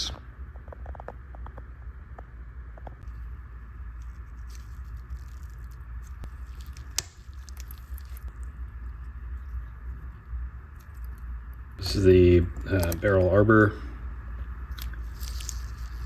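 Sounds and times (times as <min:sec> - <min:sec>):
low hum: 0:00.0 - 0:16.0
tweezers and watch parts clicking: 0:04.4 - 0:08.5, 0:12.5 - 0:13.4, 0:14.7 - 0:16.0.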